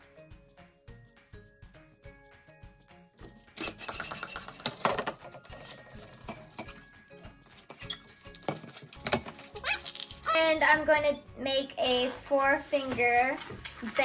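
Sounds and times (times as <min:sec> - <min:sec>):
soft background music: 0:00.0 - 0:14.0
balloons squeaking and rubbing: 0:07.6 - 0:10.6.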